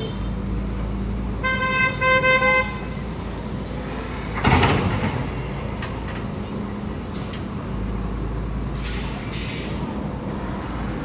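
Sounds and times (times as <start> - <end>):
vehicle horn toots: 1.4 - 3.1.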